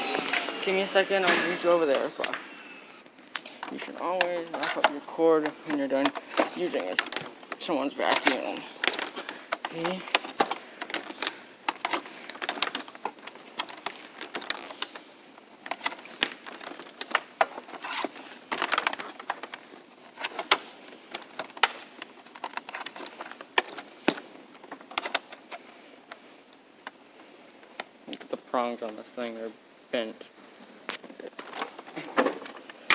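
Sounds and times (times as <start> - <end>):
plastic clicks and rattles of vacuum: 3.3 - 28.3.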